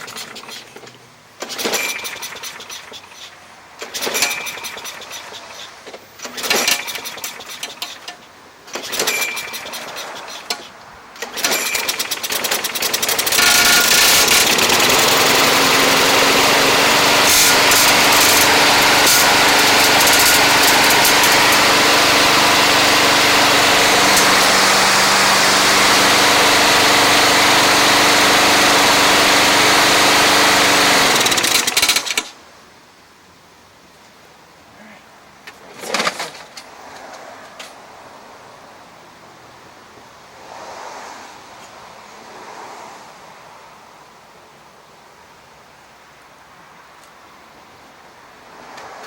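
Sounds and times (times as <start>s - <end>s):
lawn mower engine running: 0.0s - 3.0s, 3.8s - 32.4s.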